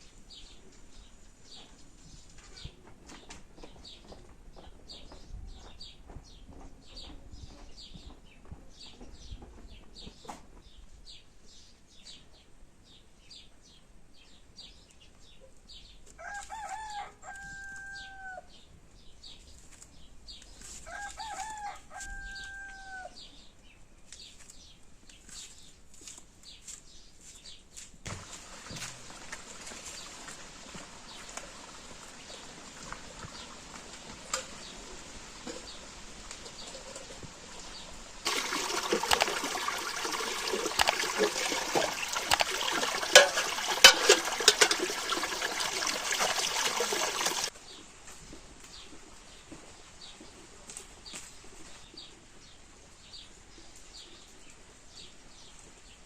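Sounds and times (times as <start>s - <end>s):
rooster crowing: 16.2s - 18.5s, 20.9s - 23.2s
small birds chirping: 23.2s - 27.9s.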